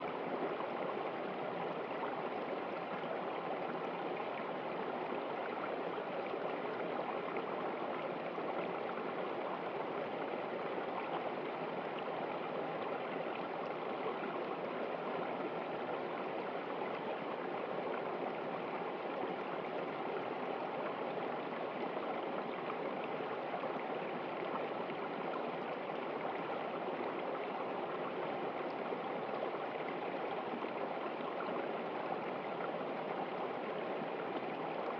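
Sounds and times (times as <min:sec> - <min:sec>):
stream flowing over rocks: 0:00.0 - 0:34.9.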